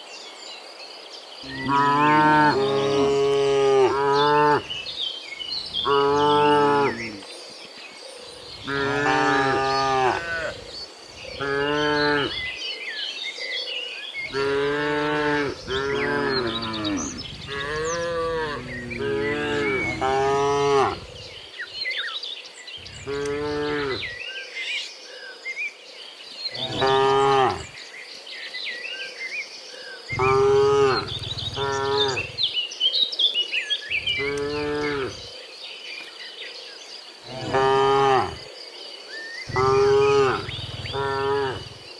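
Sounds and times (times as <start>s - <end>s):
cattle mooing: 1.5s - 4.7s, 8.6s - 10.7s, 14.3s - 21.2s, 22.9s - 24.2s, 26.6s - 27.7s, 30.1s - 32.4s, 34.0s - 35.2s, 37.3s - 38.4s, 39.5s - 41.8s.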